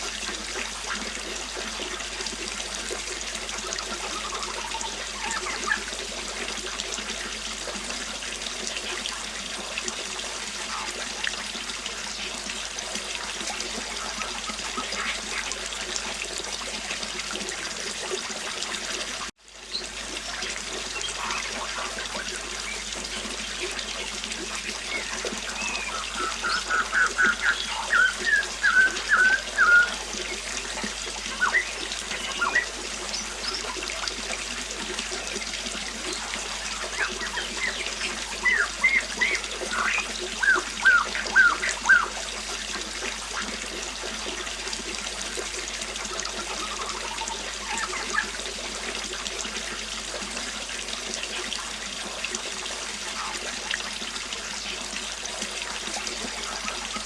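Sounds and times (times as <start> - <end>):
river water over stones: 0.0 - 57.0
songbird chirping: 24.5 - 33.9, 36.6 - 42.2.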